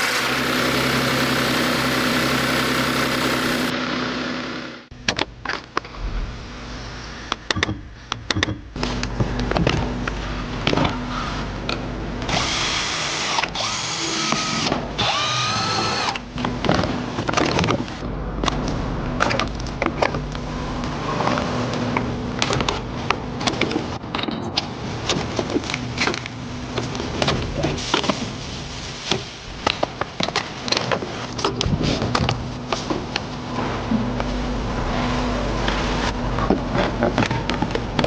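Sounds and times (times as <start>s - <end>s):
power tool whine: 0.0s - 4.8s, 12.3s - 16.2s
steady low hum: 0.2s - 13.0s, 16.2s - 29.7s, 31.2s - 38.0s.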